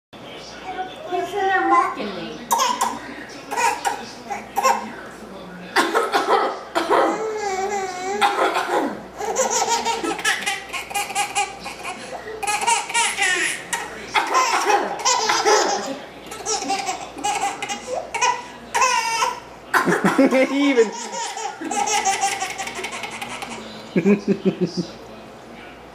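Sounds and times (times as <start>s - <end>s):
baby laughing: 2.5s - 4.9s, 6.8s - 24.8s.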